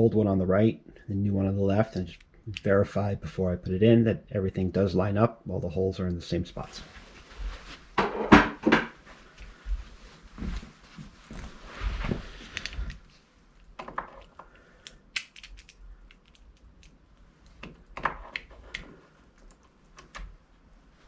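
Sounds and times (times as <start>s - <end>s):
small metal parts clicking: 14.2s - 17.0s.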